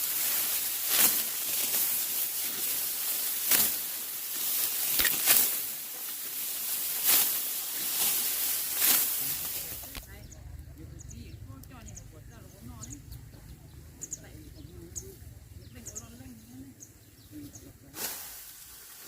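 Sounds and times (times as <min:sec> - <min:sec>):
steady high hiss: 0:00.0 - 0:11.8
dry rice stalks rustling: 0:00.0 - 0:13.1, 0:17.8 - 0:19.0.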